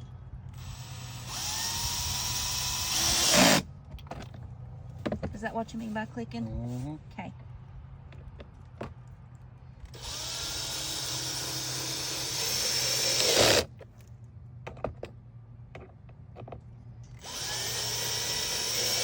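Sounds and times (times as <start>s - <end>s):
power drill driving screws: 0.6s - 3.6s, 9.9s - 13.7s, 17.2s - 19.0s
drill clutch clicking: 17.2s - 19.0s.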